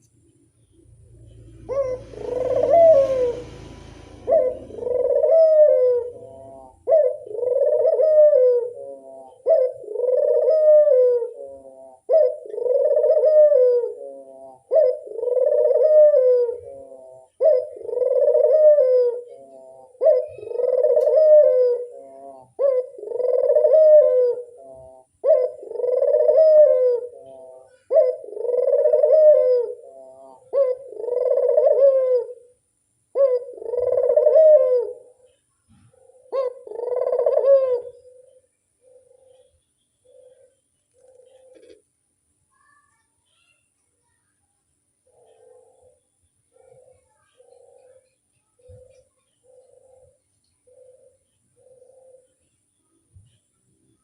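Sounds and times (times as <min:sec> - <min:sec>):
rumbling noise: 0:00.4 - 0:07.4
dove cooing: 0:01.1 - 0:42.0, 0:45.0 - 0:52.6.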